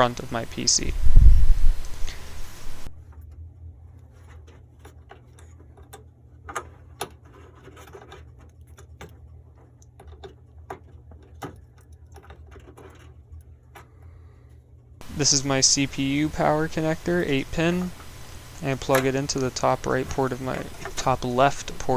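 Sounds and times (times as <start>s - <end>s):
steady low hum: 0.0s - 3.0s, 15.0s - 21.9s.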